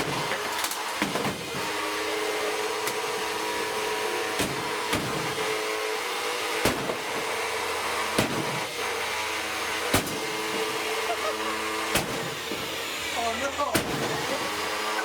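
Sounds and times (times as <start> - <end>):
vacuum cleaner motor running: 0.0 - 15.0
sharp knocks: 9.9 - 10.6.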